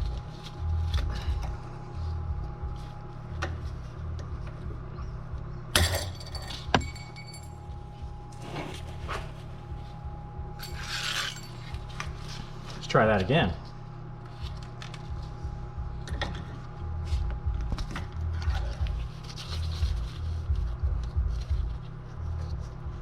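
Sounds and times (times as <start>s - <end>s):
steady low hum: 0.0s - 23.0s
metal tools clanking: 5.8s - 7.7s, 10.6s - 12.0s.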